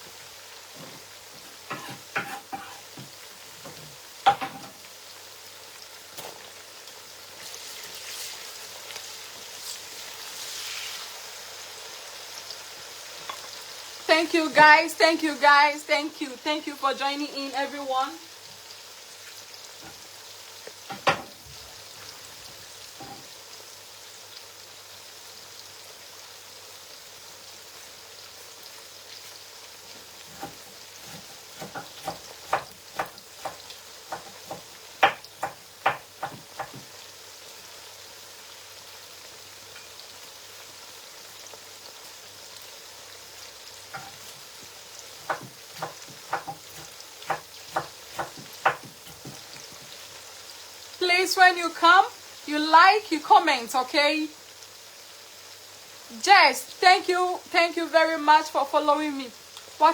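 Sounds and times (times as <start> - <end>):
food sizzling in hot oil: 0.0 - 59.9
spoon knocking on pot: 31.6 - 36.9, 43.9 - 44.3, 45.2 - 49.9.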